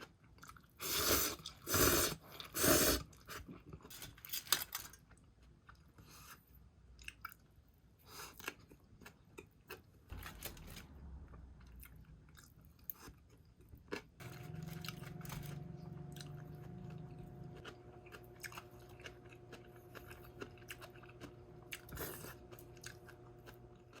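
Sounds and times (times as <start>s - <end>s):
person chewing crunchy food: 7.0s - 24.0s
steady low hum: 14.2s - 24.0s.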